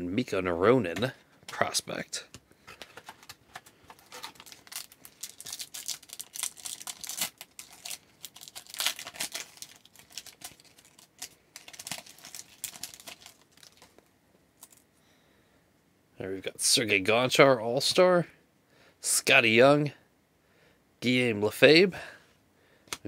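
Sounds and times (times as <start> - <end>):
cards being handled: 2.3 - 14.0
wrapper crinkling and tearing: 3.9 - 14.0.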